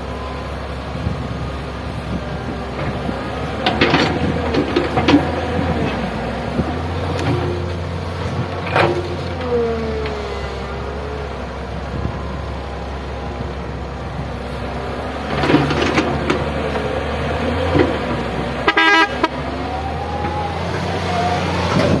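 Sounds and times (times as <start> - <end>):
excavator engine running: 0.0 - 22.0
hydraulic whine: 8.2 - 22.0
vehicle horn: 18.6 - 19.8.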